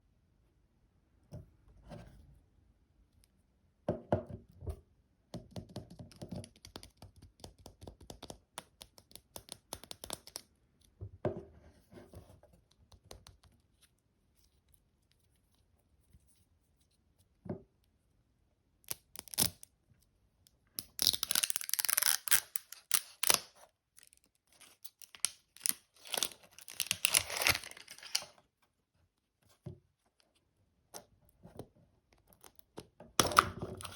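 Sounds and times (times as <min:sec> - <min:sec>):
wrapper tearing and crinkling: 0:20.8 - 0:28.3.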